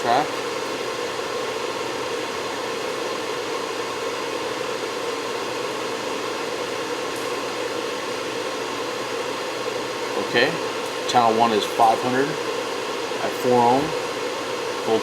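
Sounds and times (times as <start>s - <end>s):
cooling fans whooshing: 0.0s - 15.0s.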